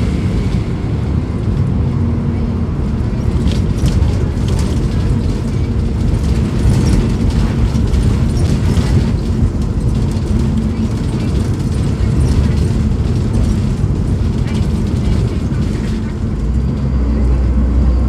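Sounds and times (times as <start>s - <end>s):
bus diesel engine rumbling: 0.0s - 18.0s
clicks and rattles: 3.1s - 16.8s.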